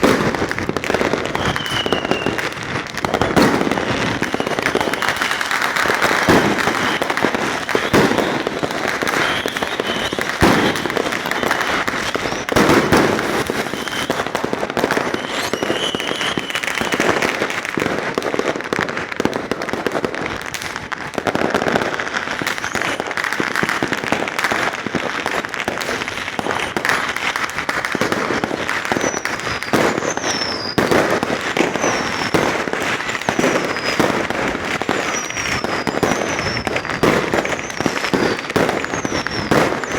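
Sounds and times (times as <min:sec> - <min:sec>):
high wavering firework whistles: 0:00.0 - 0:17.6, 0:22.4 - 0:23.1, 0:27.7 - 0:39.9
firecrackers crackling: 0:00.0 - 0:39.9
firework booms: 0:00.0 - 0:39.9.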